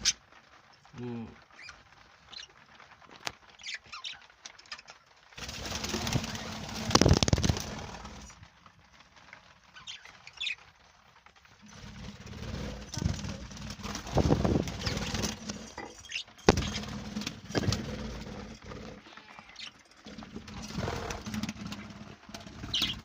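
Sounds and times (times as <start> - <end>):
wings flapping: 0.0 - 23.0
budgerigars chirping: 16.0 - 16.9, 22.7 - 23.0.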